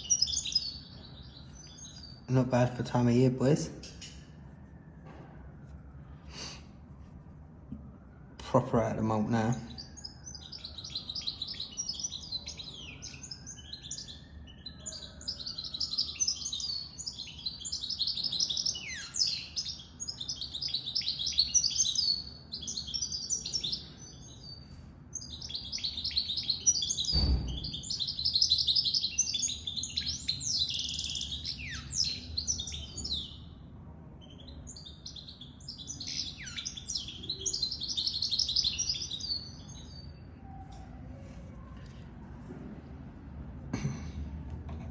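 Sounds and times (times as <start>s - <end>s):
bird twittering song: 0.0s - 4.4s, 8.8s - 33.6s, 34.2s - 41.0s
thump: 27.1s - 27.7s.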